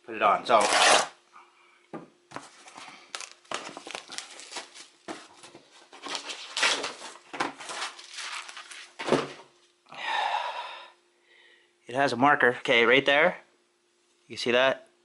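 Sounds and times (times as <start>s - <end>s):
faint steady hum: 0.0s - 15.0s
plastic packaging crinkling: 2.5s - 9.1s.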